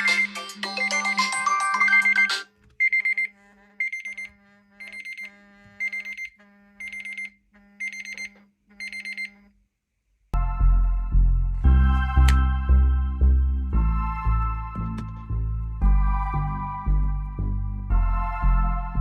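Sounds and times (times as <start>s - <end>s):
musical ringtone: 0.0s - 3.3s, 10.4s - 19.0s
rapid electronic alarm beeps: 0.0s - 9.4s.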